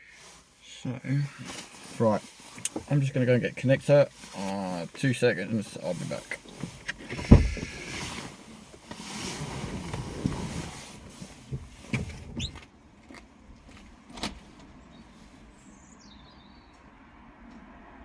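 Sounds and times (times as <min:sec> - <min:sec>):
rustling: 0:01.2 - 0:15.4
short squeak: 0:12.4 - 0:12.6.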